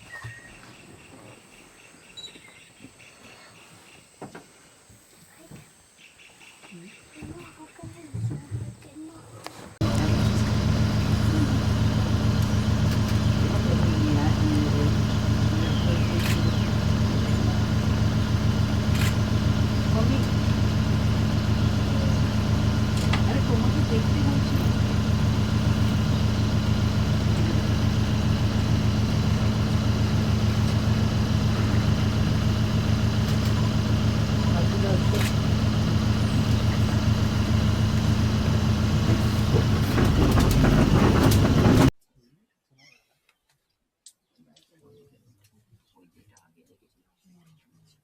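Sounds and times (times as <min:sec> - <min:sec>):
vehicle engine idling: 0:09.8 - 0:41.9.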